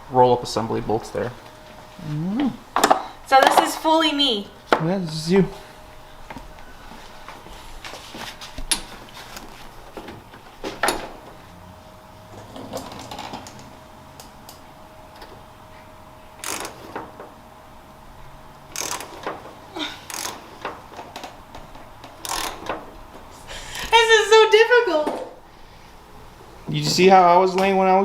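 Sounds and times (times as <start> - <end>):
hand ratchet clicking: 16.4 - 16.8, 18.7 - 19.3, 20.1 - 21.3, 22.1 - 22.8.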